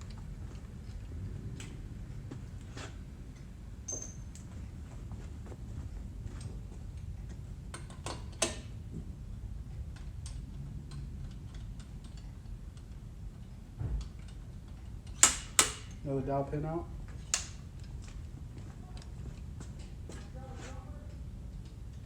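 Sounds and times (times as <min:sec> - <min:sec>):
low steady hum: 0:00.0 - 0:22.0
metallic clicks of hand tools: 0:07.7 - 0:08.7, 0:09.8 - 0:13.0, 0:14.0 - 0:16.0, 0:17.2 - 0:18.2.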